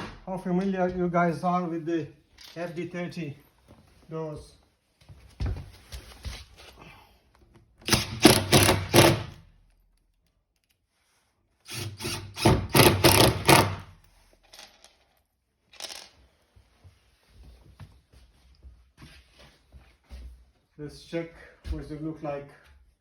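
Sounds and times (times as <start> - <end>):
power tool rattling: 7.8 - 9.4, 11.7 - 13.9.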